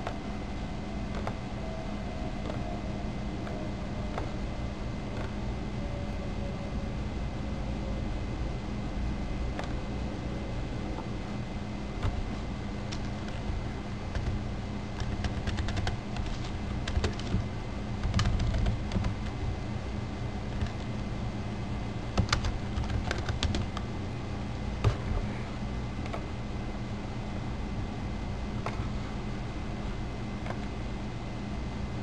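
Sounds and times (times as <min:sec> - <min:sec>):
keyboard typing clicks: 0:00.0 - 0:00.2, 0:01.1 - 0:01.4, 0:03.4 - 0:04.4, 0:09.5 - 0:09.8, 0:12.9 - 0:17.4, 0:18.0 - 0:19.4, 0:22.2 - 0:23.9
steady low hum: 0:00.0 - 0:32.0.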